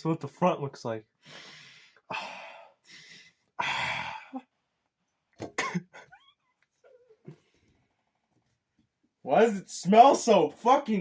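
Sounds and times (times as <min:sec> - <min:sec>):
person coughing: 0:05.4 - 0:06.2.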